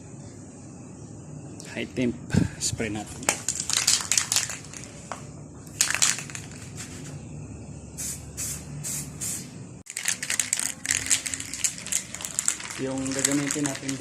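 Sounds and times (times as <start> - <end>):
spray paint hissing bursts: 7.9 - 14.0.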